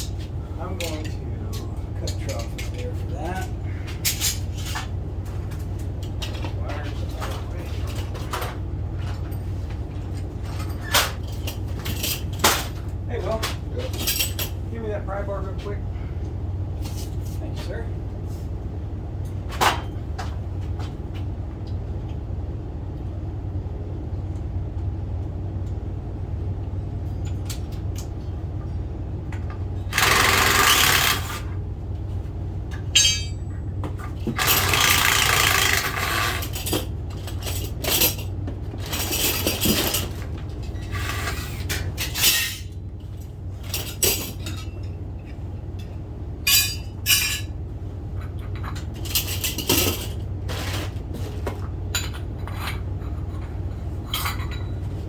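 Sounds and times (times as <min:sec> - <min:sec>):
steady low hum: 0:00.0 - 0:55.0
pry bar clinking: 0:32.8 - 0:33.6.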